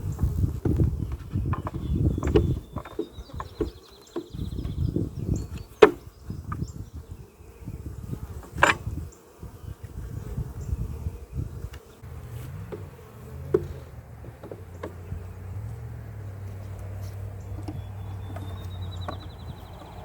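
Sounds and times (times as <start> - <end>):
honeybees buzzing: 0.0 - 20.0
sharp knocks: 12.6 - 15.2.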